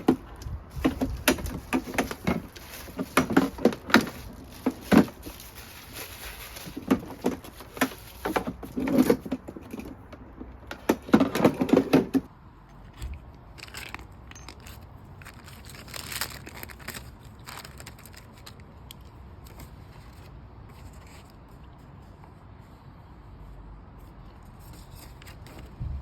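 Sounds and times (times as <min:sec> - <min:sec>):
packaging crinkling and tearing: 0:00.0 - 0:09.8, 0:13.0 - 0:21.5
rustles and clicks: 0:00.0 - 0:22.8.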